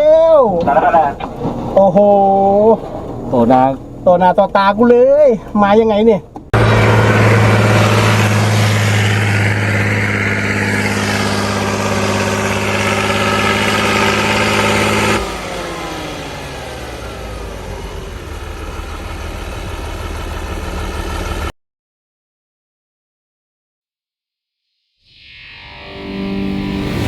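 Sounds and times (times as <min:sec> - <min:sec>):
quieter engine falling in pitch: 0:06.4 - 0:21.5
vehicle engine running: 0:06.4 - 0:21.5.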